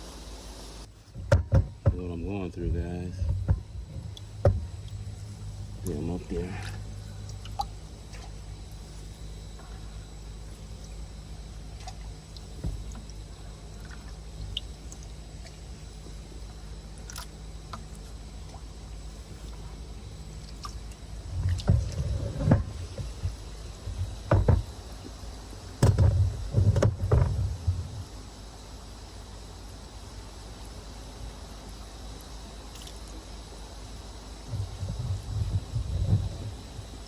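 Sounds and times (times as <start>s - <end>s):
steady low hum: 0.0s - 37.0s
water sloshing and splashing: 3.1s - 28.0s.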